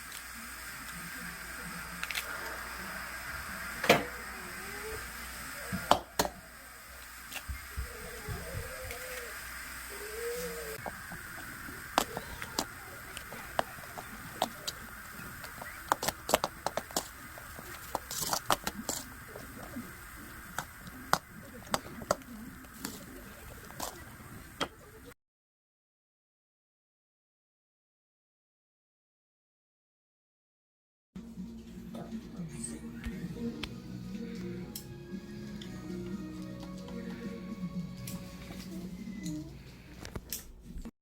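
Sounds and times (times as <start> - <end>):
background hiss: 0.0 - 25.2.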